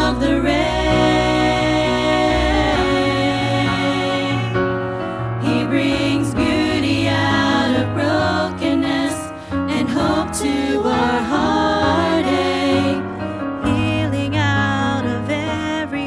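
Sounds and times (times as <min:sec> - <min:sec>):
group singing gospel song: 0:00.0 - 0:04.7, 0:05.4 - 0:13.3.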